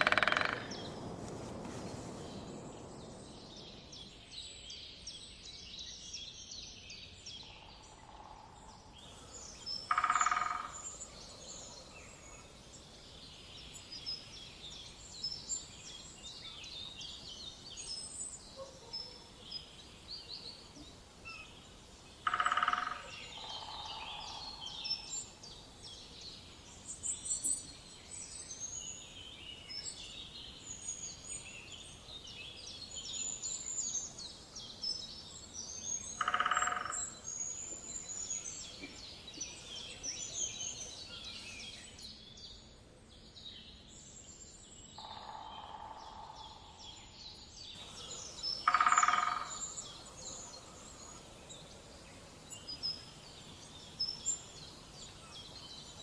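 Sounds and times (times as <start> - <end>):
louder low bird calls: 0.0 - 5.0, 7.5 - 12.8, 20.6 - 25.3, 36.0 - 41.3, 45.0 - 56.0
small birds chirping: 0.0 - 56.0.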